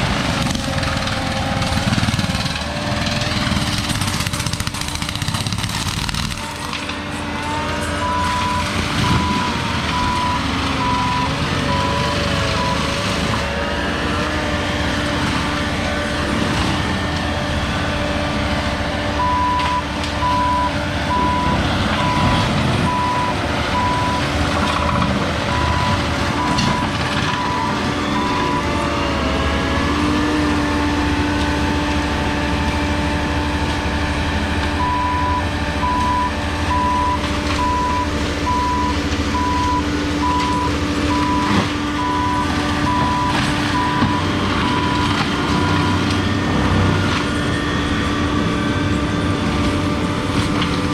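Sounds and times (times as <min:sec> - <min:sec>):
diesel engine running: 0:00.0 - 0:50.9
backup alarm beeping: 0:25.5 - 0:28.6, 0:34.8 - 0:46.0.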